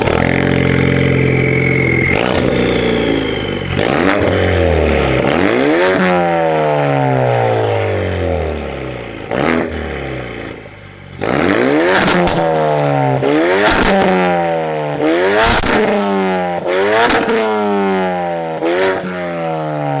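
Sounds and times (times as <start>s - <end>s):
exhaust pops: 0.0s - 6.4s, 11.2s - 12.9s, 13.6s - 14.3s, 15.4s - 16.0s
car exhaust note sweeping down: 0.0s - 19.5s.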